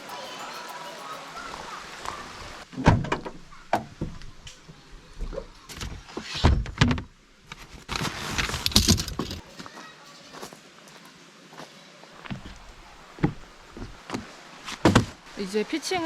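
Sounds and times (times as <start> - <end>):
metallic rattling: 8.4 - 9.4
camping gear thumps: 14.7 - 15.2.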